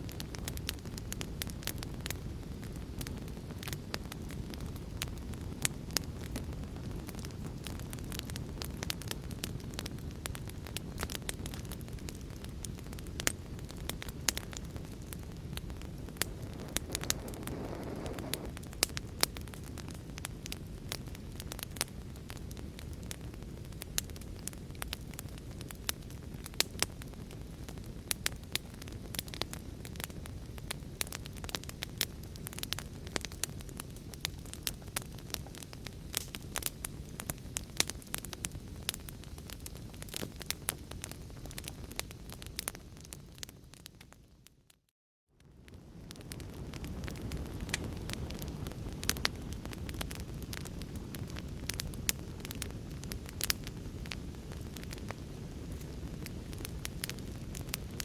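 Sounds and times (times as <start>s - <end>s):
wood fire crackling and popping: 0.0s - 44.8s, 45.4s - 58.0s
low rumble of flame: 0.0s - 58.0s
soft hiss: 16.2s - 18.6s.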